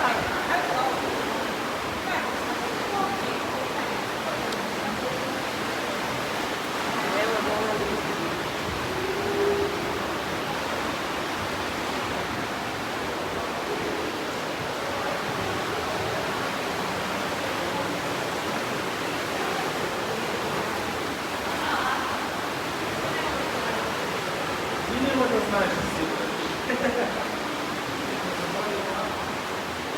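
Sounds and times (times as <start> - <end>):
river water rushing through gorge: 0.0 - 29.9.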